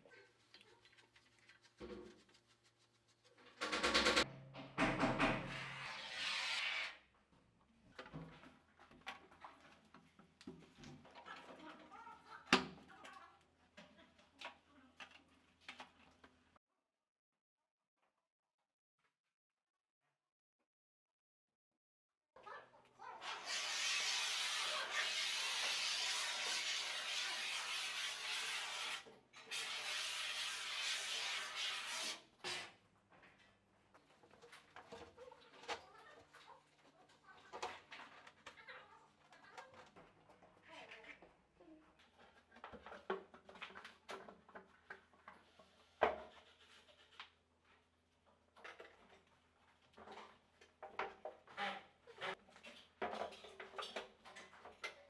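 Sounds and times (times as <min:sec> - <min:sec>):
workpieces knocking and rubbing: 0:00.3 - 0:05.9, 0:42.0 - 0:47.4, 0:48.6 - 0:55.0.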